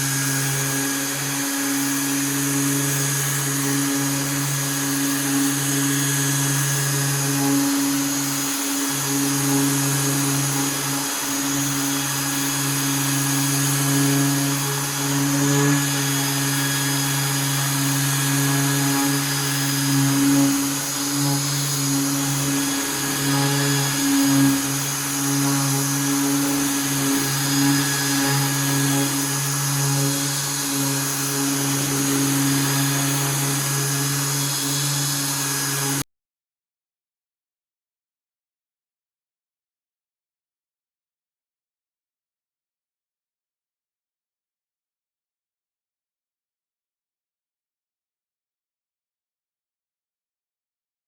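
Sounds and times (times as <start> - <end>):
electric power tool running: 0.0 - 36.0.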